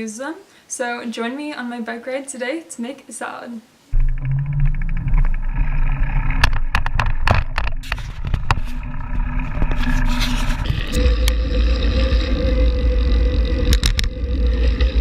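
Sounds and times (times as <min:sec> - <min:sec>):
bicycle rumble: 0:04.0 - 0:15.0.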